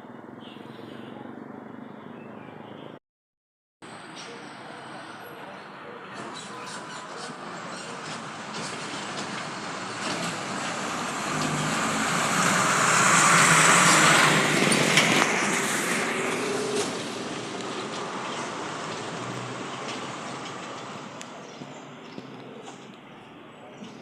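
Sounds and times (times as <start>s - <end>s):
vehicle passing by: 7.1s - 21.2s.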